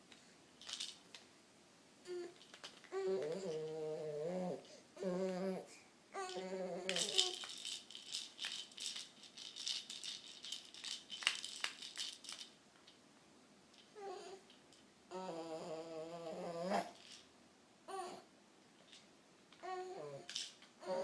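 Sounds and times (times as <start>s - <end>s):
person humming wavering noises: 3.0s - 7.4s, 15.1s - 16.9s.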